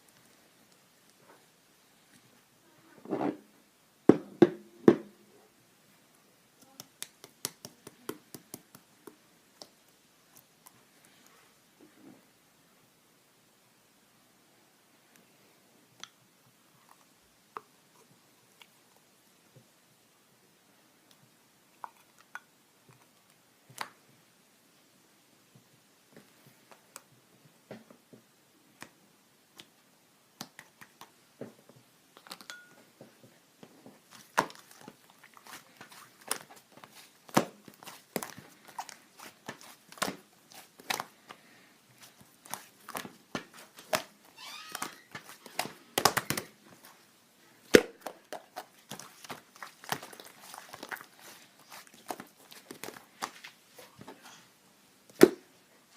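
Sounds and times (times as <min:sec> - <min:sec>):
crinkling handling noises: 0:31.7 - 0:54.5.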